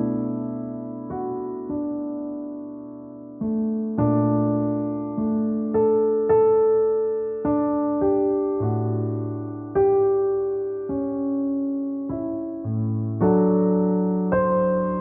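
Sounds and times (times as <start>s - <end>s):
slow gentle piano music: 0.0s - 15.0s.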